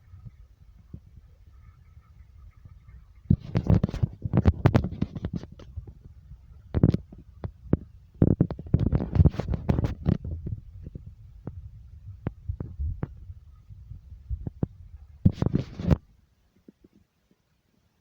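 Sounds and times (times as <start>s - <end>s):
low rumble: 10.2s - 15.2s.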